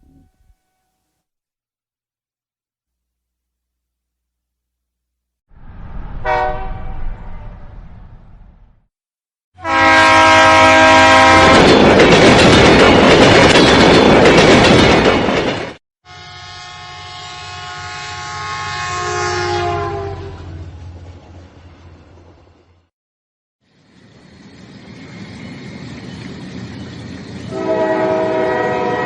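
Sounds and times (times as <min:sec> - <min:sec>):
train rushing past: 0:05.6 - 0:08.7, 0:09.7 - 0:15.8, 0:23.7 - 0:29.0
train horn: 0:06.2 - 0:07.7, 0:09.6 - 0:11.7, 0:16.0 - 0:20.8, 0:27.5 - 0:29.0
train rumbling: 0:09.6 - 0:15.8, 0:19.2 - 0:22.9, 0:23.7 - 0:29.0.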